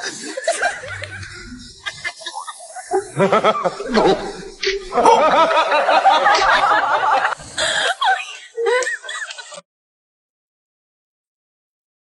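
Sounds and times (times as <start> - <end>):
person laughing: 0.0 - 9.6.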